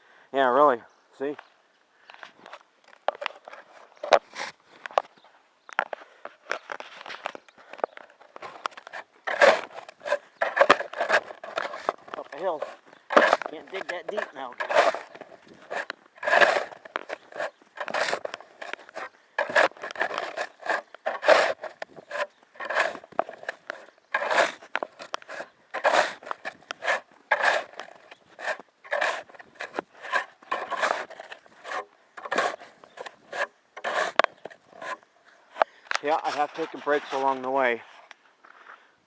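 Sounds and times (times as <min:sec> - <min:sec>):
snow crunching: 0:08.4 - 0:35.0
snow shovel scraping: 0:08.4 - 0:35.1, 0:36.1 - 0:37.8.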